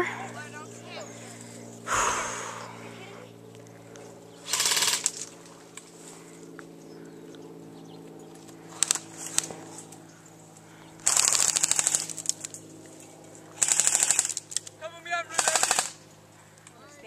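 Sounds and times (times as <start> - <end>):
airsoft rifle rapid bursts: 4.5 - 5.3, 11.0 - 12.4, 13.6 - 14.6, 15.3 - 16.0.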